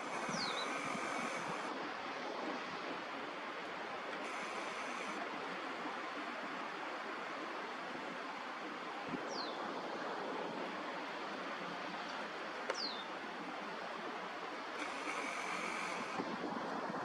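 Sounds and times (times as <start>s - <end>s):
bird whistles: 0.3s - 0.9s.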